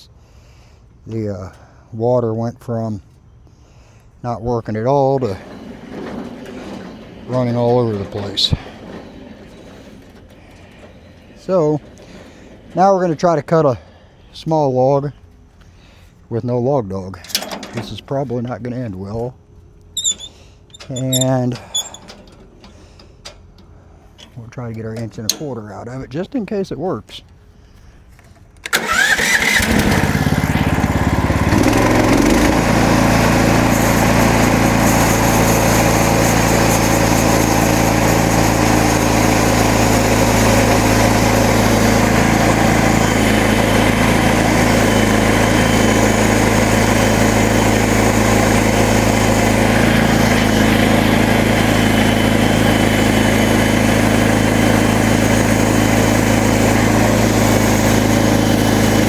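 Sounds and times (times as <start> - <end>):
gasoline engine starting and running: 4.5 - 16.3, 17.0 - 59.0.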